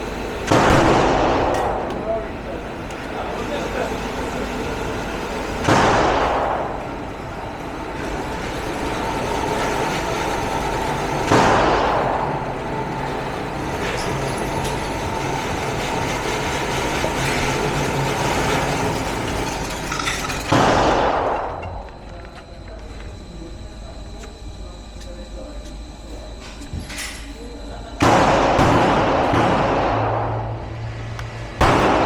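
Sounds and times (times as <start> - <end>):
pistol shots: 0.5 - 1.6, 28.0 - 30.5, 31.6 - 32.0
steady background rumble: 27.4 - 32.0.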